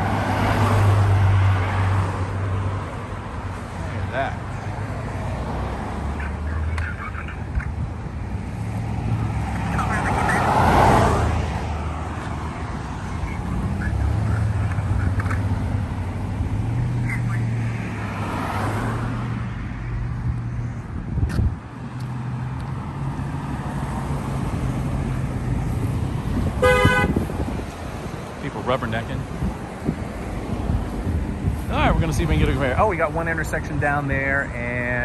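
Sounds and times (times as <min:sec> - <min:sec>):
car engines idling and creeping: 0:00.0 - 0:35.0
car horn: 0:26.4 - 0:27.5.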